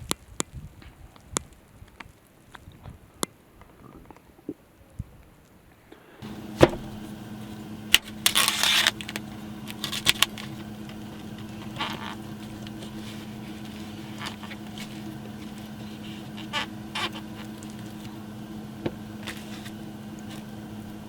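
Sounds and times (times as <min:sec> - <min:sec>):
steady low hum: 0:05.9 - 0:21.0.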